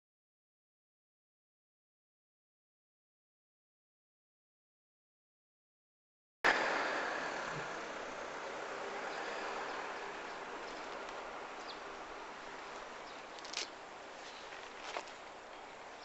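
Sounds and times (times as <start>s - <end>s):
rushing outdoor background noise: 6.5s - 16.0s.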